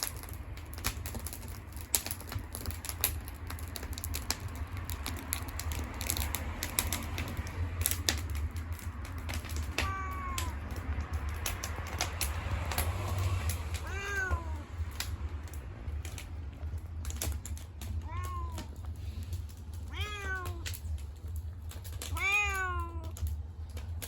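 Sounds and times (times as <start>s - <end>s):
campfire crackling: 0.0s - 24.0s
low steady rumble: 0.0s - 24.0s.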